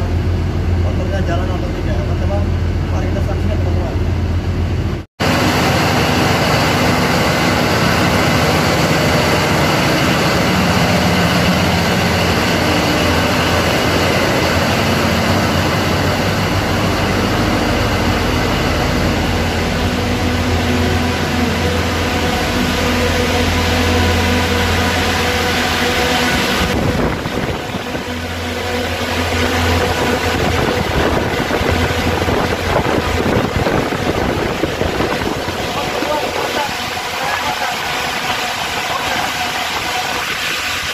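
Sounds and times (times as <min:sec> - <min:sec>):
low hum: 0:00.0 - 0:40.9
machinery droning: 0:00.0 - 0:40.9.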